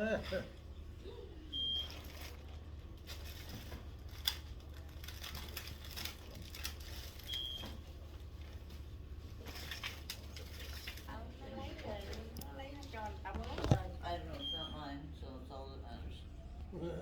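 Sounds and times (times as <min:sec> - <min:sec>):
low steady hum: 0:00.0 - 0:17.0
handling and rustling: 0:01.9 - 0:13.9.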